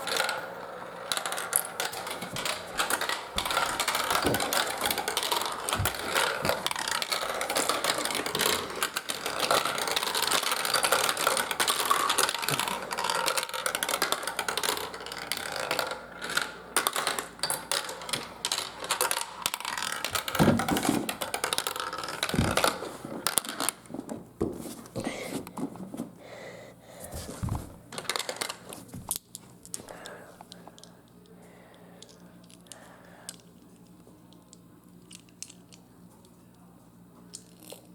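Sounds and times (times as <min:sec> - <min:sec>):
marbles rattling on a track: 0:00.0 - 0:23.8, 0:27.9 - 0:28.7.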